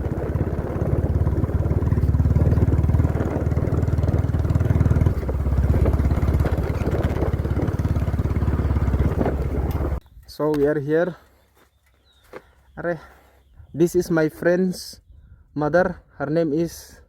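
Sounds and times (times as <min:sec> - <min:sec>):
motorcycle engine running: 0:00.0 - 0:10.0.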